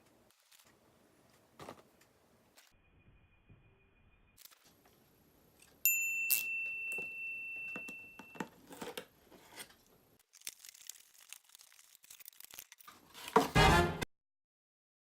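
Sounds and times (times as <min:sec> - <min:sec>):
high ringing tone: 0:02.8 - 0:04.4, 0:05.9 - 0:08.5
plastic packaging rustling: 0:08.5 - 0:13.5.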